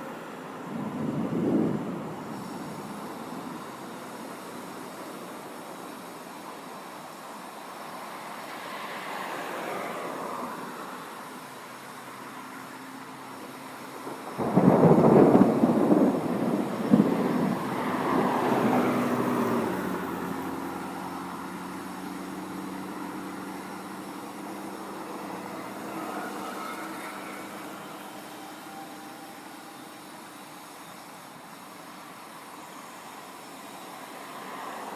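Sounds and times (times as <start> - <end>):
rolling thunder: 0.7 - 3.6, 14.1 - 19.6.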